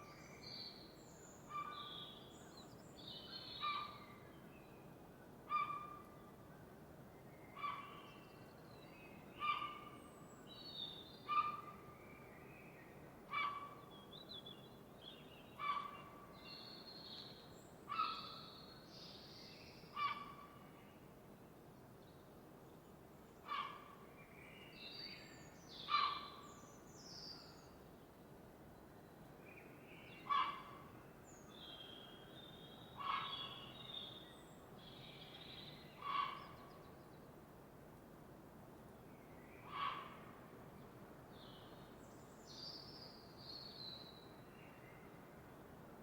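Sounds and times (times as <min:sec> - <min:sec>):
faint steady hiss: 0:13.9 - 0:46.0.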